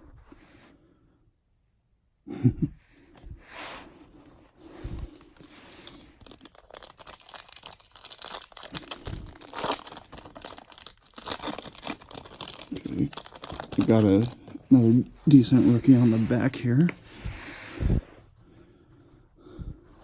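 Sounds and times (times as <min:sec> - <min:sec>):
foil wrapper tearing and crinkling: 0:05.0 - 0:14.7.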